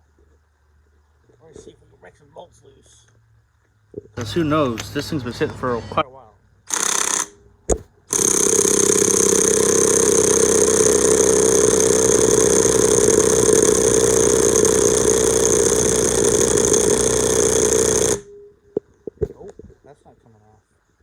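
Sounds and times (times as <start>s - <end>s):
impact wrench hammering: 6.7s - 18.3s.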